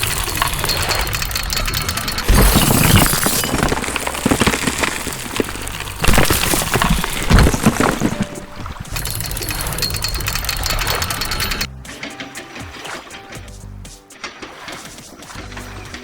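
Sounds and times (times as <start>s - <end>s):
glass shattering: 0.0s - 11.7s.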